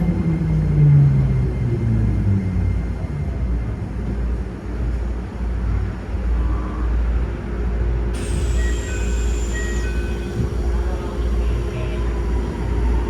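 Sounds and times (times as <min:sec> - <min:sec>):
electric train rumbling: 0:00.0 - 0:13.0
train motor tone: 0:08.2 - 0:13.0.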